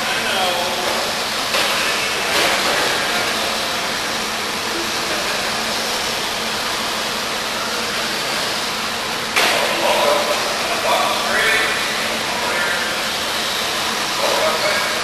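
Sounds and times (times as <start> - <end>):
rc cars racing: 9.3 - 15.0.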